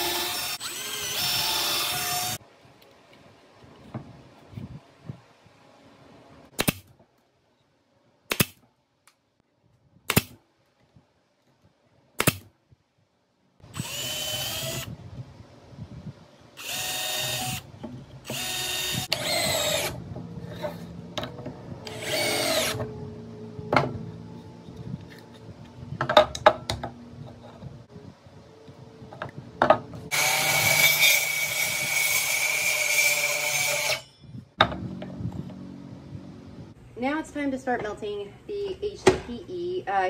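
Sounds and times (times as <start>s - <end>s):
power drill whining: 0.0s - 2.4s, 13.8s - 14.9s, 16.6s - 20.0s, 21.8s - 22.9s, 30.1s - 34.0s.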